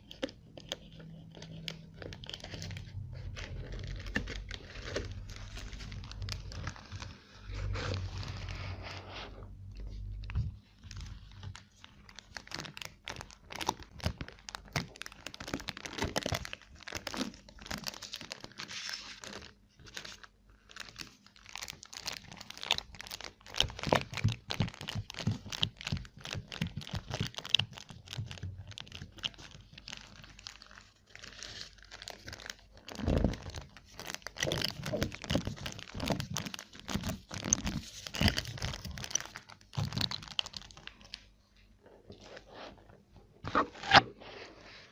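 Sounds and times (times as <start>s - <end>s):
chocolate crunching being chewed: 0.0s - 8.5s, 9.7s - 41.2s.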